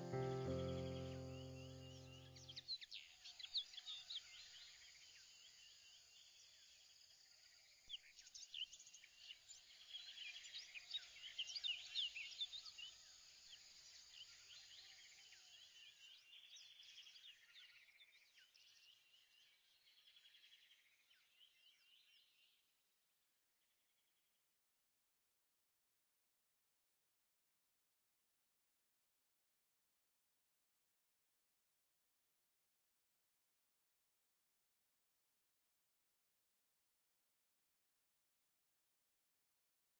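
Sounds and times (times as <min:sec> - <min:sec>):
small birds chirping: 0:00.0 - 0:22.6.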